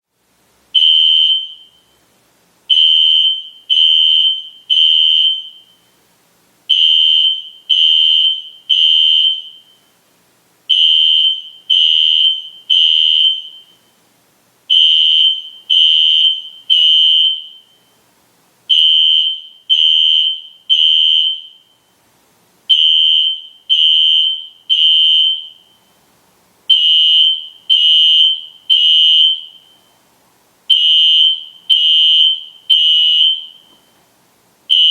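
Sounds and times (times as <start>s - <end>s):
fire alarm horn: 0.8s - 2.0s, 2.7s - 5.9s, 6.7s - 9.8s, 10.7s - 13.9s, 14.7s - 17.9s, 18.7s - 21.9s, 22.7s - 25.8s, 26.7s - 29.9s, 30.7s - 33.9s, 34.7s - 34.9s.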